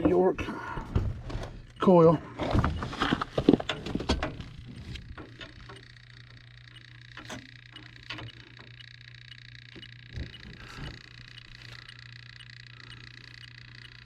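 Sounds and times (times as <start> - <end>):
steady electrical hum: 0.0 - 14.0
faint high electronic ticks: 5.0 - 14.0.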